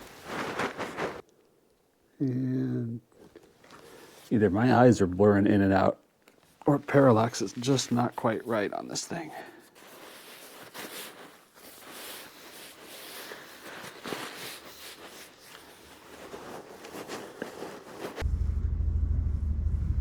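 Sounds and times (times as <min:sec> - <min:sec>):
equipment rustling and clicking: 0:00.0 - 0:01.5, 0:09.7 - 0:18.2
loud low rumble: 0:18.2 - 0:20.0.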